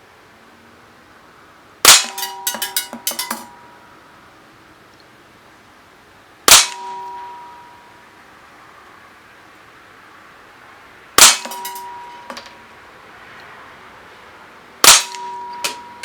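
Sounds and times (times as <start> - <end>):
metallic ringing: 1.9 - 4.0, 6.5 - 8.0, 11.2 - 12.7, 14.8 - 16.0
rattle of metallic clicks: 2.0 - 3.6, 11.2 - 12.6.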